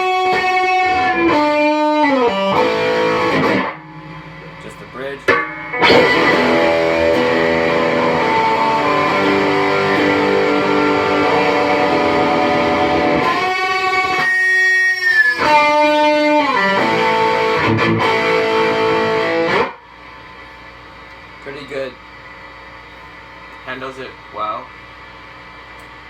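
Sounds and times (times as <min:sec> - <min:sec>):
electric guitar through amplifier: 0:00.0 - 0:19.9.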